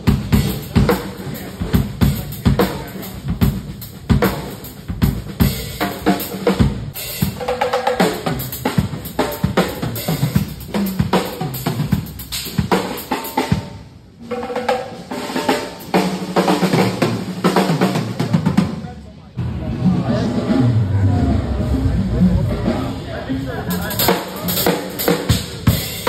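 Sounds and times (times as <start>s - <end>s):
drum kit fills: 0.0s - 26.0s.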